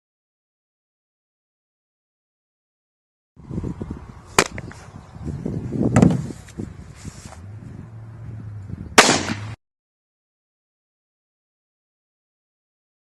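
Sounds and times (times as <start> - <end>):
rough background noise: 3.5 - 8.6
sharp bangs: 9.0 - 9.6.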